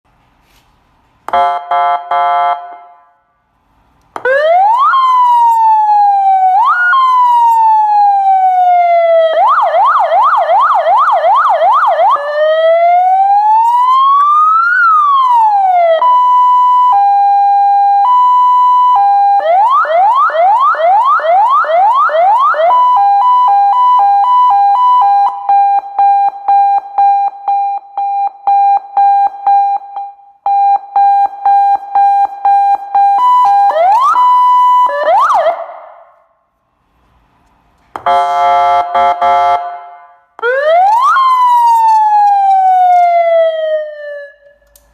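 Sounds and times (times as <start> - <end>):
electronic siren cycling tones: 4.2 - 36.1.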